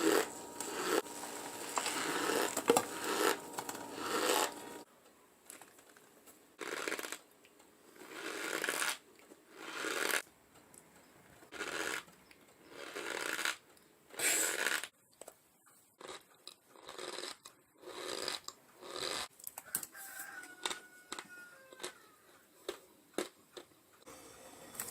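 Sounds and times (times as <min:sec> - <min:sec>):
squeaky crunches of chewing: 0:08.0 - 0:10.2, 0:11.5 - 0:14.9, 0:15.9 - 0:19.3, 0:20.0 - 0:23.7.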